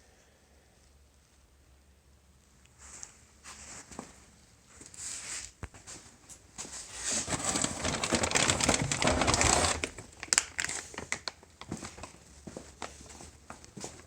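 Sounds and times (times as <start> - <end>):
crinkling rustling handling noise: 2.8 - 14.0.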